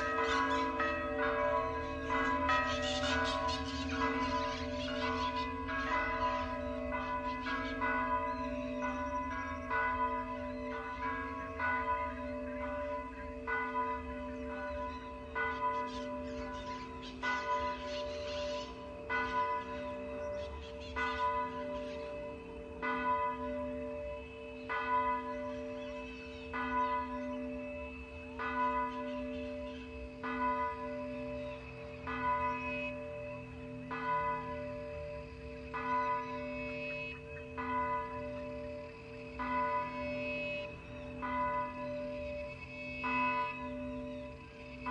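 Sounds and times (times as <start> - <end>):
church bell tolling: 0.0 - 44.9.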